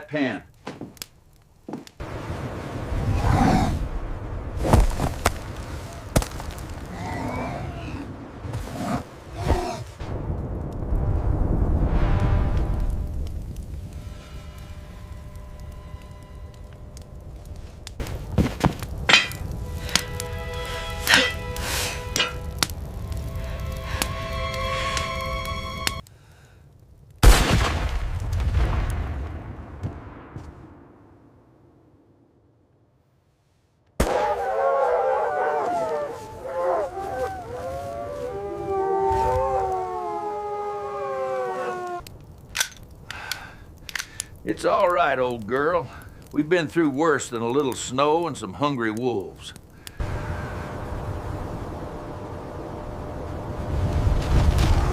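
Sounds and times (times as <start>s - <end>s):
tense background music: 10.1s - 18.2s, 18.8s - 26.1s
wolves howling: 34.1s - 42.1s.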